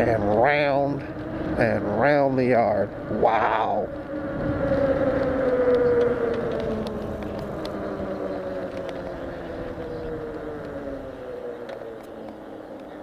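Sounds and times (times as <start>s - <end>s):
vehicle motor hum: 0.0s - 13.0s.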